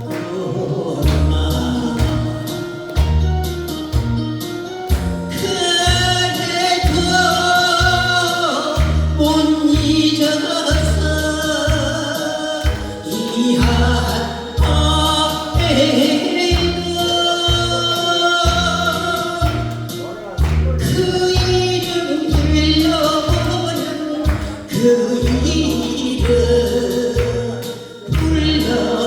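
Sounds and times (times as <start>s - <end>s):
person singing with long held notes: 0.0s - 3.8s, 4.6s - 19.7s, 20.8s - 29.0s
live band with steady bass beat: 0.0s - 29.0s.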